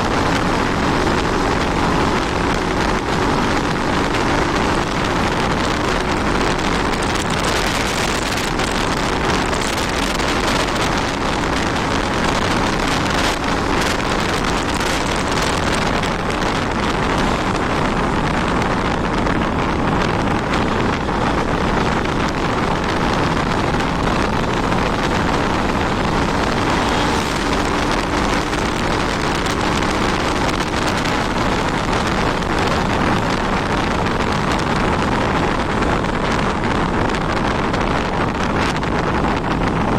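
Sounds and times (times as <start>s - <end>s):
motorcycle engine running: 0.0s - 39.9s
wind rushing on microphone: 0.0s - 39.9s.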